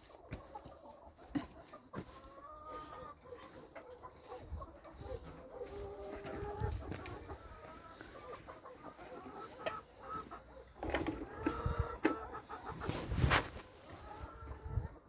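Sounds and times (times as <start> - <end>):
chickens clucking: 0.0 - 15.0.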